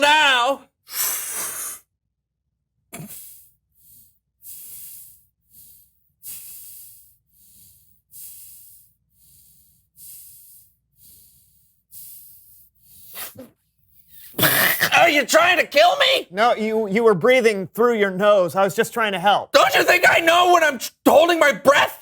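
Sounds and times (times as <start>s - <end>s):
person breathing heavily through nose: 0.8s - 1.9s, 3.0s - 14.4s.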